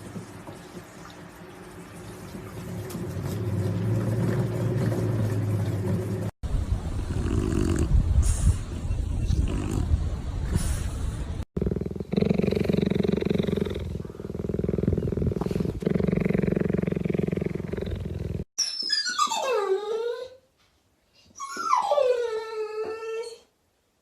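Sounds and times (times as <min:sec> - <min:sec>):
dog growling: 0:11.6 - 0:18.5
dog whining: 0:18.6 - 0:20.5, 0:21.2 - 0:23.5.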